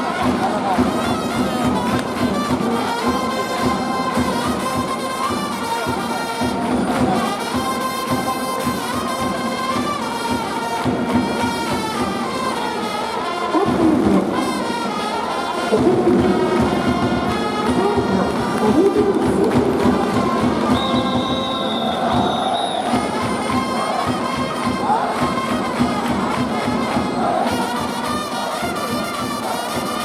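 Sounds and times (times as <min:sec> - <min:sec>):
trumpets playing a fight song: 0:00.0 - 0:18.9, 0:20.0 - 0:30.0.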